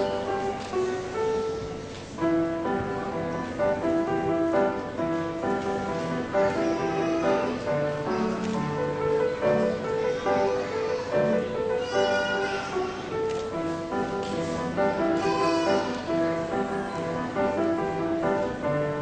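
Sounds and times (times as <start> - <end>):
solo piano melody: 0.0 - 19.0.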